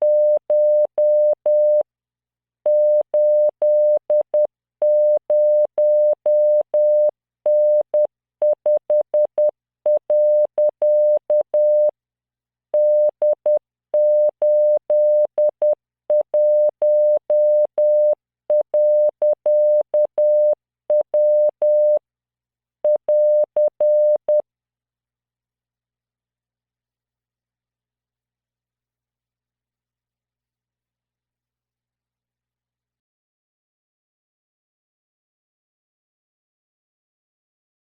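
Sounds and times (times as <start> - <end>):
morse code beeps: 2.7 - 11.9, 12.8 - 22.0, 22.9 - 24.4.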